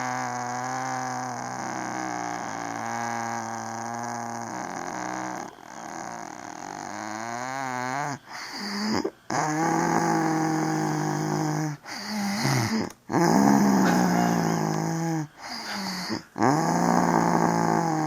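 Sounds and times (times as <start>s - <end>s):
loud pitched snoring: 0.0s - 18.0s
quieter breaths: 15.2s - 16.4s.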